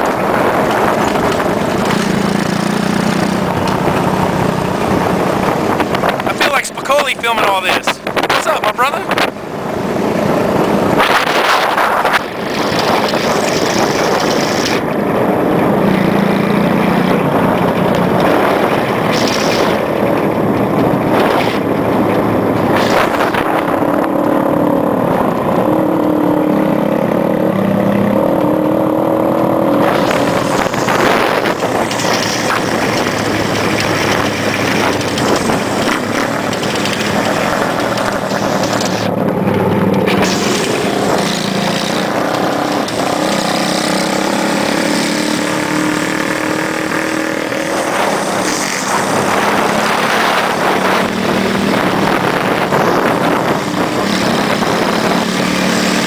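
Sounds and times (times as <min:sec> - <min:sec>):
steady rush of noise: 0:00.0 - 0:56.0
vehicle engine running: 0:00.0 - 0:56.0.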